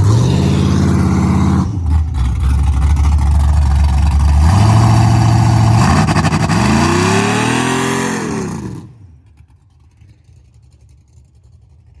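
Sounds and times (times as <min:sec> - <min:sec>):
car engine revving hard: 0:00.0 - 0:02.0, 0:04.4 - 0:09.0.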